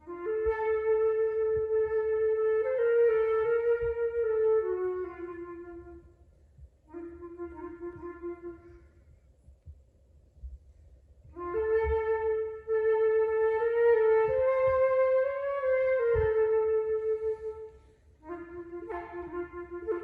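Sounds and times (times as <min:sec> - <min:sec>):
solo flute: 0:00.0 - 0:09.3, 0:11.2 - 0:20.0.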